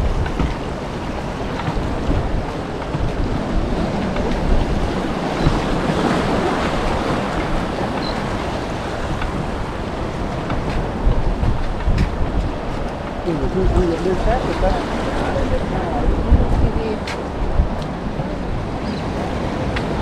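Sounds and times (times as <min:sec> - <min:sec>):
surf washing: 0:00.0 - 0:20.0
wind buffeting microphone: 0:00.0 - 0:20.0.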